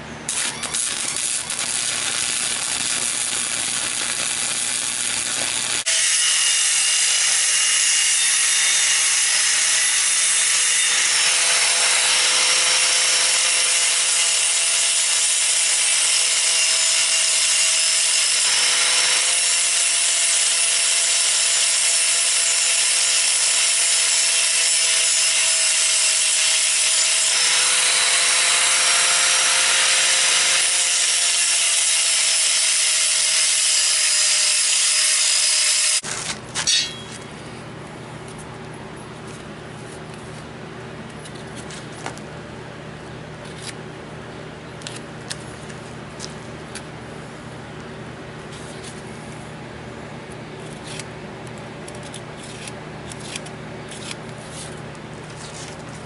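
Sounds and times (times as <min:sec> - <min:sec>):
power tool whining under load: 0:00.0 - 0:14.7.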